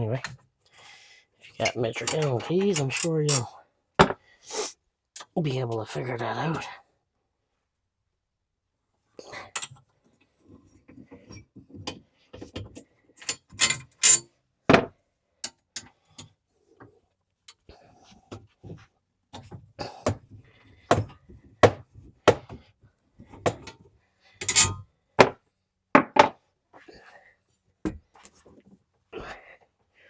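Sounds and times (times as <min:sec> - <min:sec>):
metal tools clicking and clanking: 0:01.6 - 0:04.1, 0:09.6 - 0:09.8, 0:13.2 - 0:14.2, 0:24.4 - 0:25.4.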